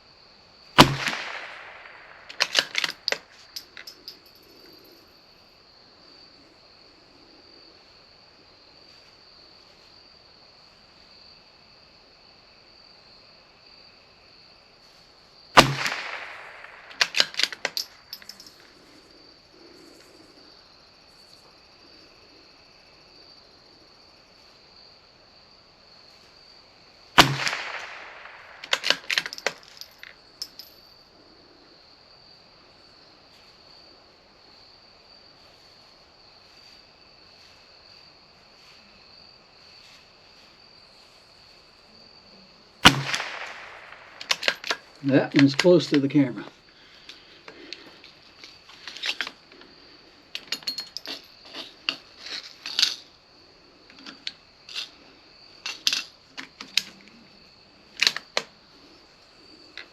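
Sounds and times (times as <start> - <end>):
insect trill: 0.0 - 59.9
rifle shot crack: 0.8 - 3.7, 15.6 - 18.0, 27.2 - 29.9, 42.8 - 46.3
rifle bolt metallic clicks: 0.8 - 4.3, 15.6 - 18.7, 27.2 - 30.7, 42.8 - 46.1, 58.0 - 58.5.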